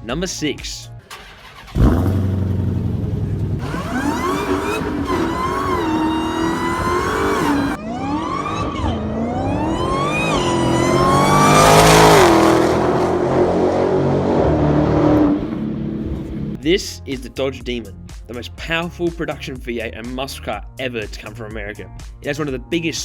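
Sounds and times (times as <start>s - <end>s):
car engine revving: 1.1s - 16.6s
supercharger whistle: 3.6s - 11.6s.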